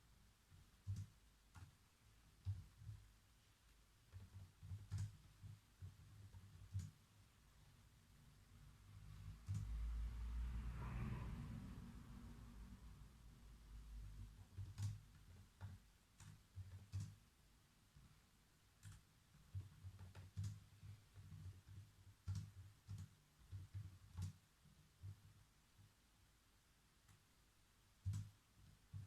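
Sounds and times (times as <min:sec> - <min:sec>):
keyboard typing: 0:00.5 - 0:03.1, 0:04.0 - 0:07.8, 0:09.0 - 0:09.9, 0:14.0 - 0:17.3, 0:17.9 - 0:25.9, 0:27.9 - 0:29.0.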